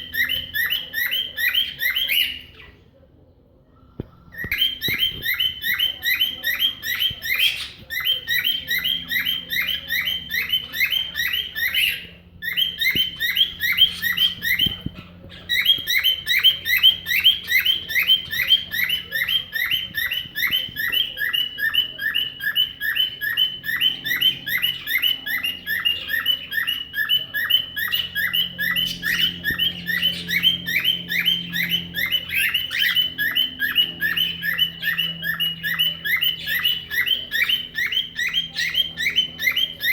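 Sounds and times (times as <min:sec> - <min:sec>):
bird whistling car alarm: 0:04.3 - 0:14.8, 0:15.5 - 0:39.9.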